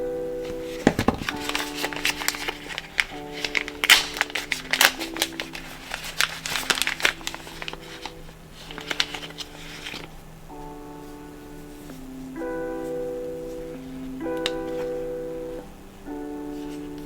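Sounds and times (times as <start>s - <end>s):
soft background music: 0.0s - 17.0s
packaging crinkling and rustling: 0.4s - 10.3s.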